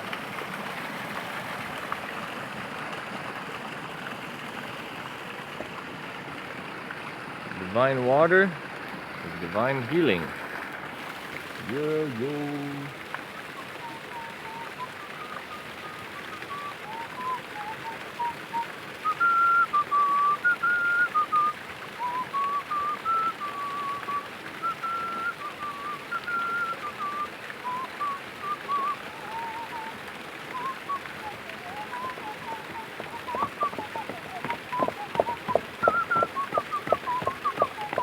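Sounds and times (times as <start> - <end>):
steady hiss: 11.0 - 18.6
person whistling a melody: 13.8 - 38.0.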